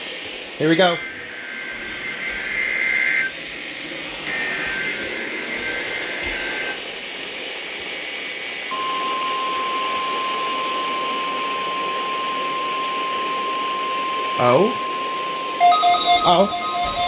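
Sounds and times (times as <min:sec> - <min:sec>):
steady alarm tone: 0:00.0 - 0:06.9, 0:08.7 - 0:17.0
two-pitch data burst: 0:15.6 - 0:17.0.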